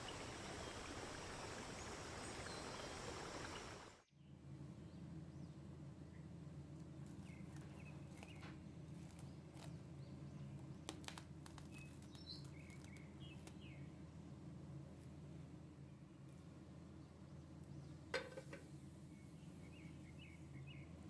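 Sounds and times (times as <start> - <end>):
faint low hum: 0.0 - 21.0
small bird chirps: 7.1 - 14.0.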